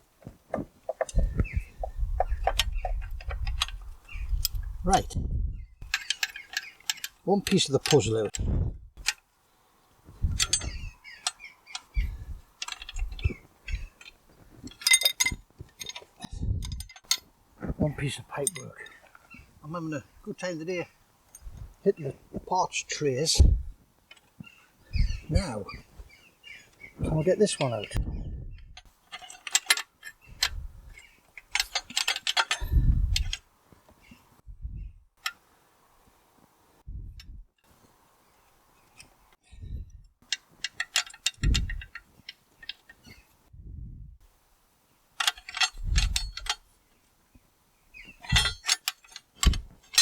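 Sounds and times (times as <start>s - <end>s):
dull thumps: 0.2s - 3.7s
metal parts clicking and knocking: 0.2s - 5.2s, 5.8s - 9.3s, 10.3s - 17.3s, 18.0s - 19.3s, 28.8s - 33.5s, 40.2s - 43.2s, 45.2s - 46.7s, 48.0s - 50.0s
metal clinks rattling: 12.6s - 17.3s, 31.4s - 33.4s, 48.1s - 50.0s.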